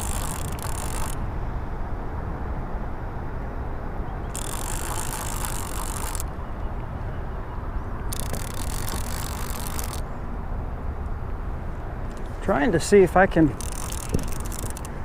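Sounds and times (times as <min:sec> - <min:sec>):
fishing reel whirring: 0:00.0 - 0:01.2, 0:04.3 - 0:06.3, 0:08.1 - 0:10.0, 0:13.6 - 0:15.0.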